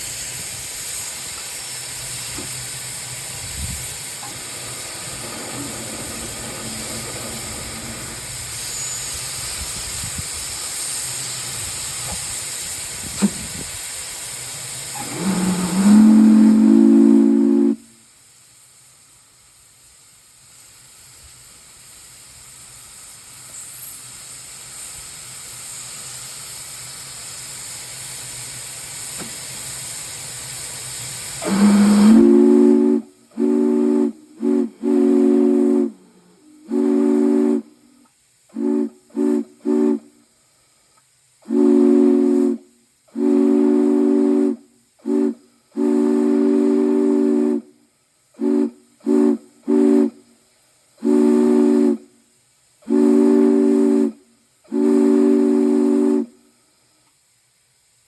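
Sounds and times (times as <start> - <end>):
steam hissing: 0.0 - 58.0
three-chime steam whistle: 14.9 - 18.2, 31.4 - 40.3, 41.4 - 50.4, 51.0 - 56.9.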